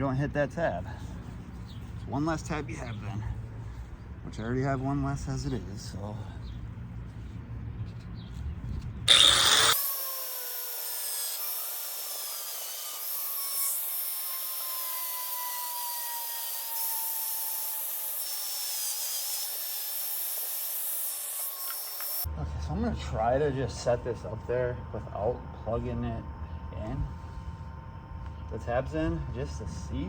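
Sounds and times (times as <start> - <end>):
cutoff wheel grinding whine: 9.1 - 16.8.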